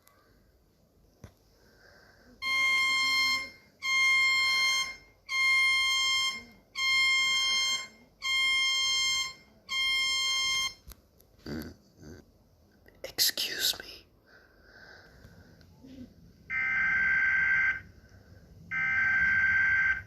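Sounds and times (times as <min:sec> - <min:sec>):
emergency alert long beeps: 0:02.4 - 0:10.8, 0:16.5 - 0:18.0, 0:18.7 - 0:20.0.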